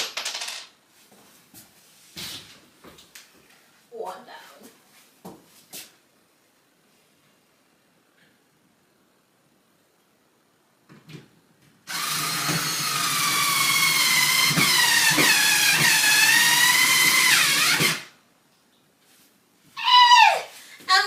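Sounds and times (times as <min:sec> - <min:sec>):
electric drill motor whine: 0:11.9 - 0:18.1.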